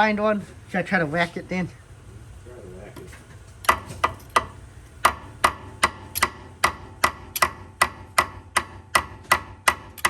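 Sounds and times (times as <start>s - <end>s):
hammer striking steel spindle: 3.7s - 10.0s.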